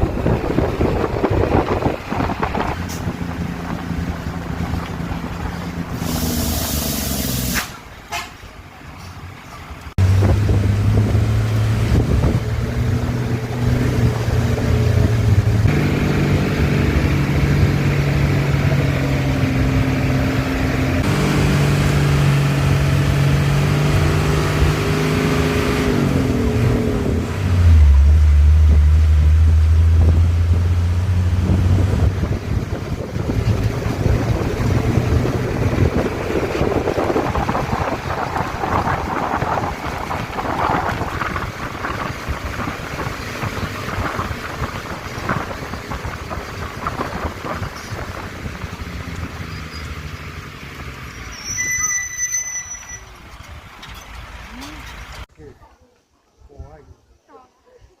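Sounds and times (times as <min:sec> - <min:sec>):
vehicle engine running: 0:26.0 - 0:51.1.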